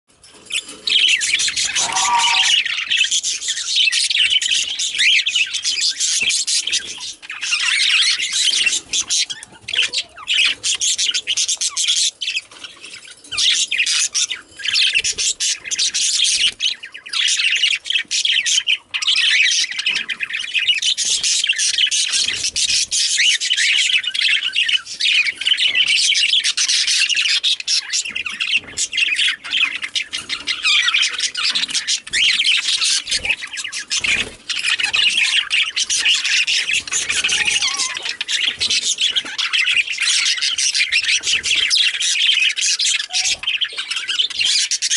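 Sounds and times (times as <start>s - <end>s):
budgerigars warbling and chattering: 0.3s - 44.9s.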